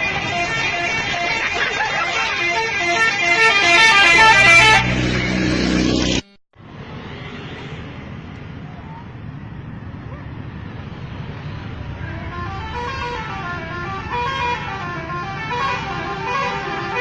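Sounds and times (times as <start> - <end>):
multi-tone air horns playing tune: 0.0 - 5.3, 12.0 - 17.0
bus rumble: 0.0 - 17.0
traffic: 0.0 - 17.0.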